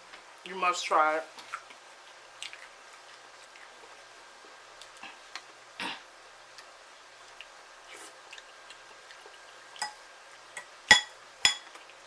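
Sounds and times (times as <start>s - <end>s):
chewing mouth clicks and smacks: 1.4s - 4.0s, 6.5s - 7.6s, 8.3s - 9.6s.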